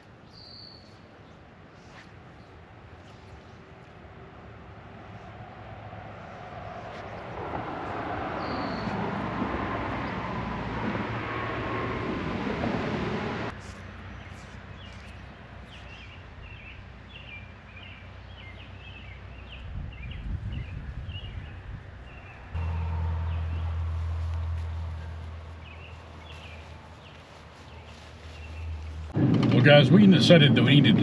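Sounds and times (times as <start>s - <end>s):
bird chirping: 0.3s - 1.1s, 8.4s - 9.0s, 14.1s - 29.1s
loud rushing noise: 22.6s - 27.0s.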